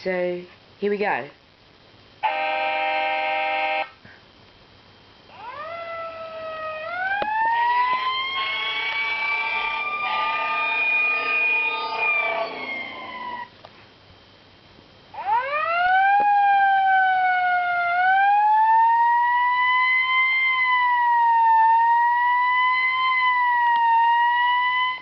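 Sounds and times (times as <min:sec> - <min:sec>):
wail siren: 0:02.2 - 0:03.9, 0:05.3 - 0:13.5, 0:15.2 - 0:25.0
siren tone: 0:02.2 - 0:04.0, 0:05.3 - 0:13.5, 0:15.2 - 0:25.0.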